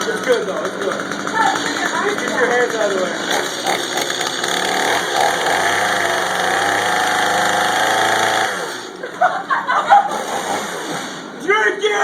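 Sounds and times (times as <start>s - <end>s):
chainsaw engine running: 0.0s - 12.0s
people shouting and whooping: 1.3s - 2.3s, 9.0s - 12.0s.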